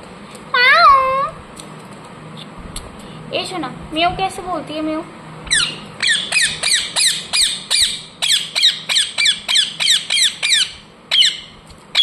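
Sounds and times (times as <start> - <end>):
parrot chirping: 5.5 - 12.0.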